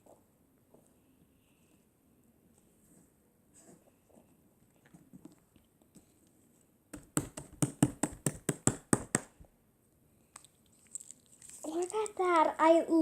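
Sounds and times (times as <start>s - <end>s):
slime squishing: 10.3s - 12.4s
slime popping: 10.4s - 12.2s.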